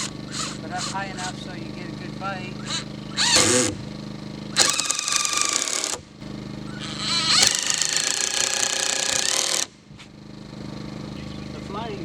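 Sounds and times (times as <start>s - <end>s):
impact driver driving screw into wood: 0.0s - 1.3s, 2.6s - 3.8s, 4.6s - 6.1s, 6.7s - 9.7s.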